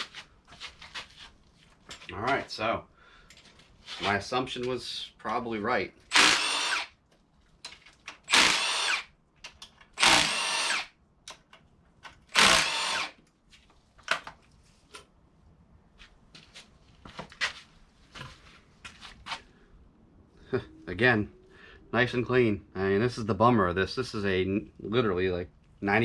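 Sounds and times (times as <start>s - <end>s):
cordless power driver whirring: 6.1s - 6.9s, 8.3s - 9.1s, 10.0s - 10.9s, 12.3s - 13.2s.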